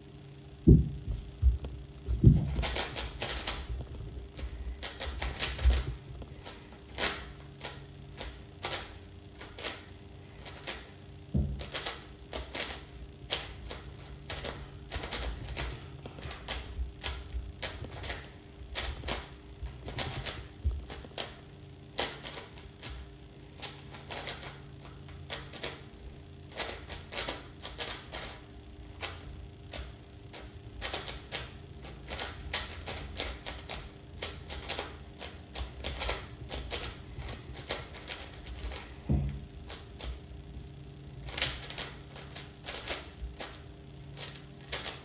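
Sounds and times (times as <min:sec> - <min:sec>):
plastic puzzle cube clacking: 0:02.4 - 0:03.8, 0:32.1 - 0:38.9, 0:41.3 - 0:43.6.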